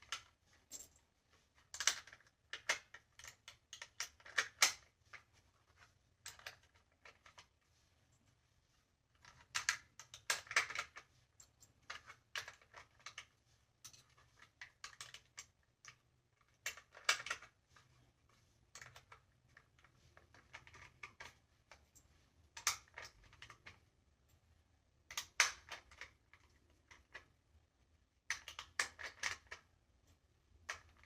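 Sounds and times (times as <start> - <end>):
metallic clicks of cartridges: 1.7 - 4.8, 28.3 - 29.6.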